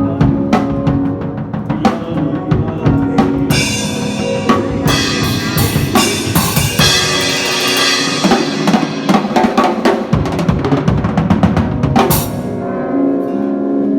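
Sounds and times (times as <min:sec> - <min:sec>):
drum kit playing: 0:00.0 - 0:12.8
held keyboard chords: 0:00.0 - 0:13.9
cymbal hit: 0:03.5 - 0:10.2.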